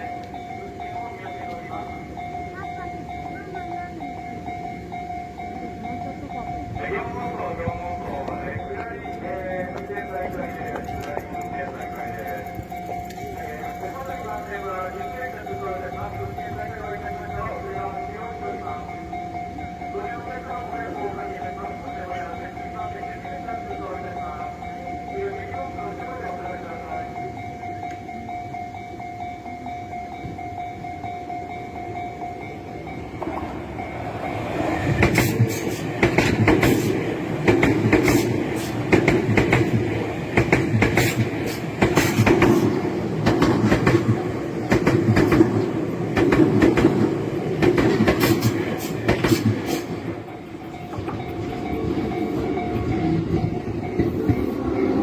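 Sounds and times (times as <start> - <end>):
level crossing warning bell: 0.0 - 55.0
train wheels clattering on rails: 5.5 - 17.8, 29.6 - 55.0.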